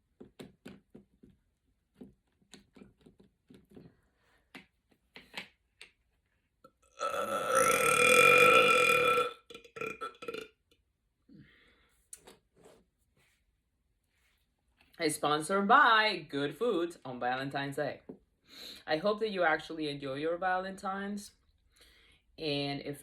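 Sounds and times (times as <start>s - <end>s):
woman belching: 6.9s - 10.6s.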